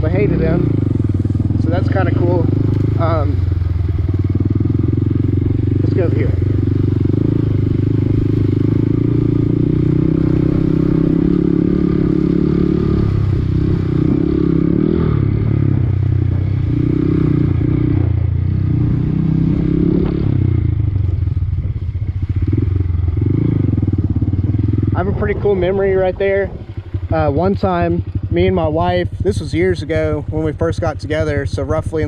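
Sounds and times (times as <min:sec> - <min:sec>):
small motorcycle engine revving: 0:00.0 - 0:21.1.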